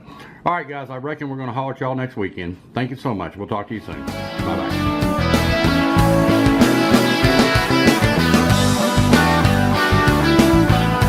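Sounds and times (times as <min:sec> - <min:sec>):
background music with steady beat: 0:03.8 - 0:11.0.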